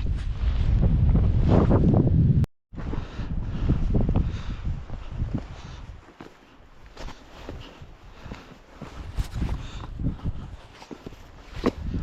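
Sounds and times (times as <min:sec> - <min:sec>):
wind rumbling on microphone: 0:00.0 - 0:06.1, 0:06.7 - 0:12.0
footsteps on wet stony path: 0:04.9 - 0:12.0.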